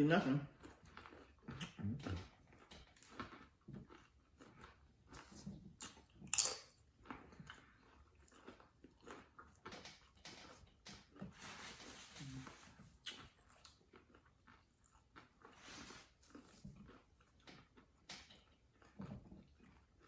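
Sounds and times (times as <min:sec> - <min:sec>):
chewing clicks: 0:00.5 - 0:11.2, 0:12.8 - 0:15.6, 0:16.3 - 0:20.0.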